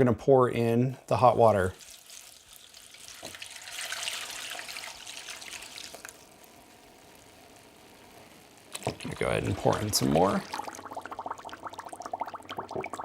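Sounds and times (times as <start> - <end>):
faint hiss: 0.0 - 13.0
dry ice bubbling: 1.1 - 13.0
water poured splashing: 1.2 - 6.3, 8.7 - 13.0.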